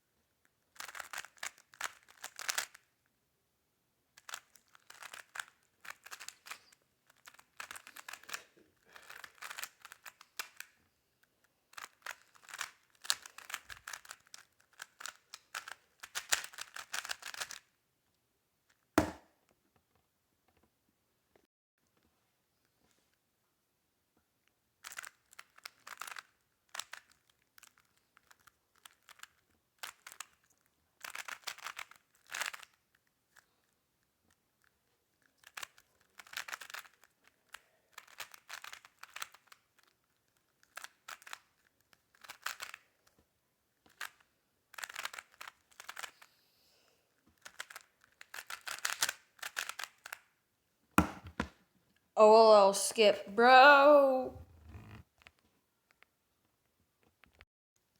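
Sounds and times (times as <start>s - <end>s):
plastic puzzle cube clicking: 0.8s - 2.9s, 4.2s - 8.4s, 9.0s - 10.7s, 11.7s - 17.7s, 24.9s - 30.4s, 31.0s - 32.8s, 35.4s - 39.9s, 40.6s - 42.8s, 43.9s - 46.2s, 47.4s - 50.3s.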